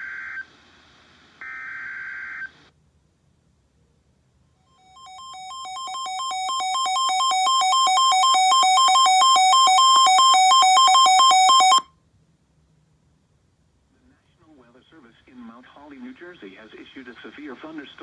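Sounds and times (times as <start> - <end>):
two-pitch alert tone: 5.0 - 11.8.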